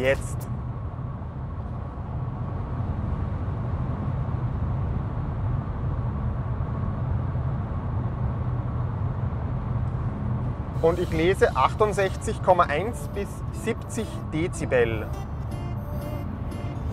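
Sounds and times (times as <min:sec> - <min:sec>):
road and wind noise: 0:00.0 - 0:16.9
low engine drone: 0:09.3 - 0:16.9.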